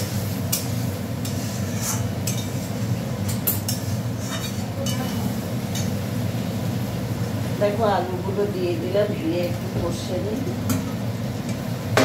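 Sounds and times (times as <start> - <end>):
metal utensils clinking on cookware: 3.3 - 5.9.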